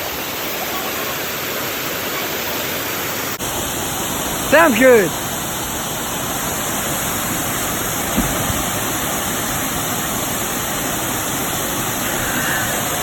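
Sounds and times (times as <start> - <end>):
waterfall rushing: 0.0 - 13.0
low thump: 8.0 - 9.6.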